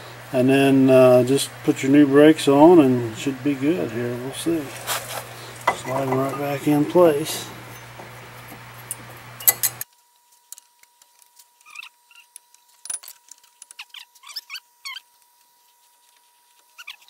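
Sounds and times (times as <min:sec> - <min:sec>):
faint steady hum: 0:00.0 - 0:12.8
light metal clinks: 0:05.6 - 0:09.8.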